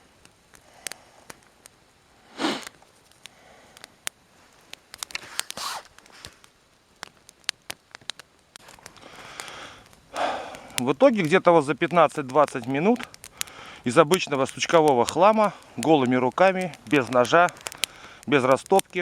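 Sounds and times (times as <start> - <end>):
campfire crackling and popping: 0.0 - 19.0
loud rustles: 5.0 - 6.4.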